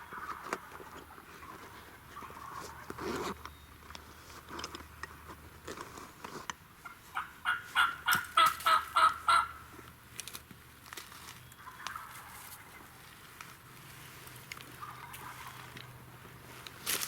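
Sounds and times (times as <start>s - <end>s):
wild turkey yelping: 6.8s - 9.8s, 11.5s - 13.1s, 14.8s - 15.8s.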